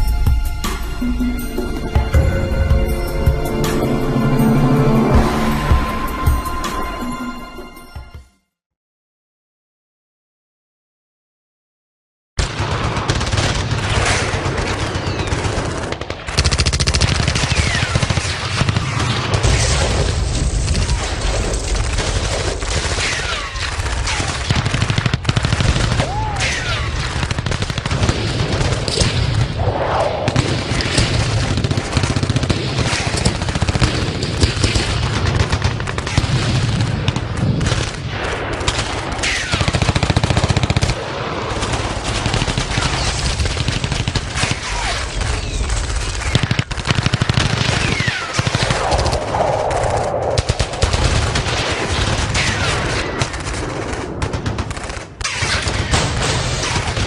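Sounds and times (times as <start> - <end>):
low rumble: 0.0 - 7.8
machine-gun fire: 12.4 - 29.5, 30.3 - 49.2, 50.4 - 57.0.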